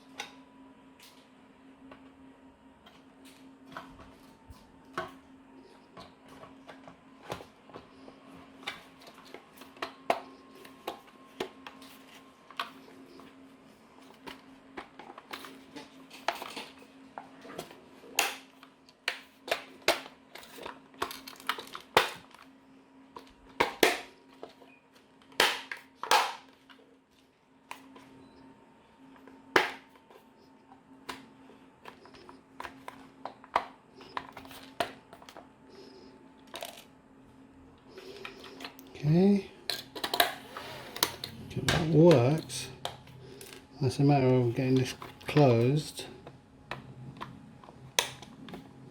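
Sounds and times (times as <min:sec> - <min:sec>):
faint steady hum: 0:00.0 - 0:48.9
plastic parts clicking and crinkling: 0:17.6 - 0:22.5, 0:36.4 - 0:36.9.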